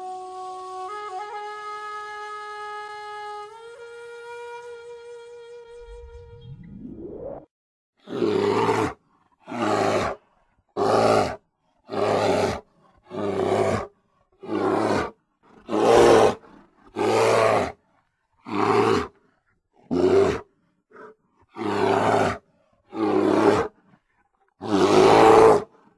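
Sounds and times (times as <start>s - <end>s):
bear roaring: 8.0s - 10.2s, 10.8s - 17.8s, 18.4s - 19.2s, 19.8s - 23.8s, 24.6s - 25.7s.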